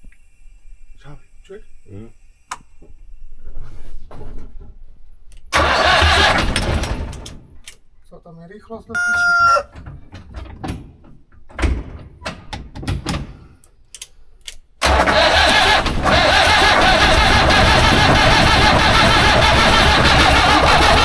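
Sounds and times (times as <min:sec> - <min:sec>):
diesel engine starting and running: 0:05.5 - 0:07.6, 0:14.8 - 0:21.0.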